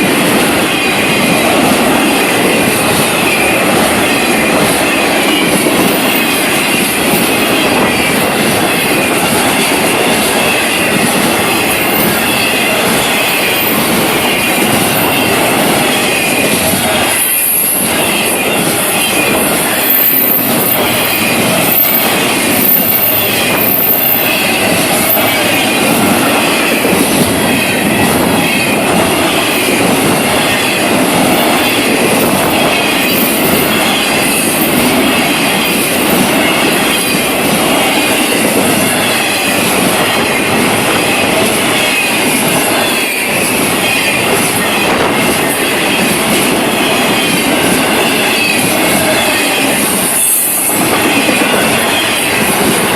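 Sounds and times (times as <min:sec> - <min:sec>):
train wheels running on rails: 0:00.0 - 0:52.9
high wheel squeals: 0:00.4 - 0:52.9.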